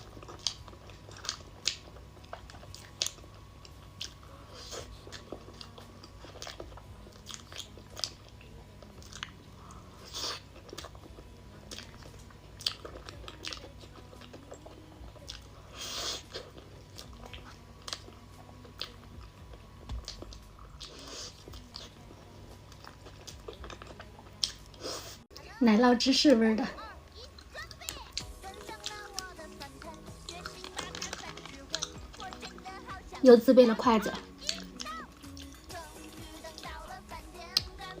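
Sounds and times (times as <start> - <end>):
crunchy snack chewing: 0.0 - 19.0, 27.4 - 32.9, 34.3 - 35.9.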